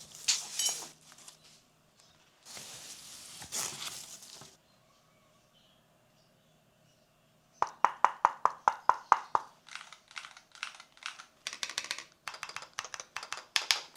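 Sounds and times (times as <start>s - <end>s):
keyboard key presses: 9.7s - 13.9s.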